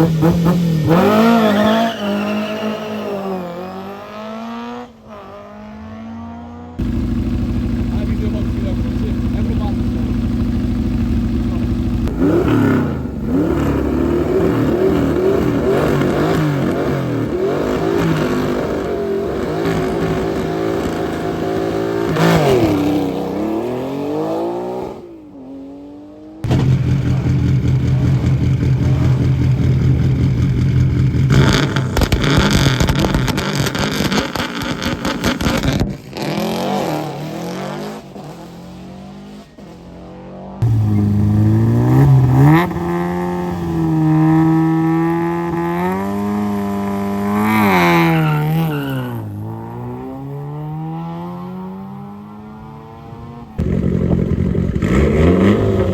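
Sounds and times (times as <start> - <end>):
car engine at high revs: 0.0 - 55.9
rally car engine revving: 0.0 - 55.9
engine crackling on launch: 26.4 - 37.2.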